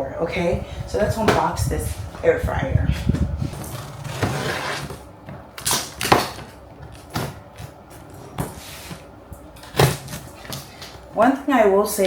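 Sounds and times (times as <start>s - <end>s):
cardboard being pulled open: 3.5s - 5.0s.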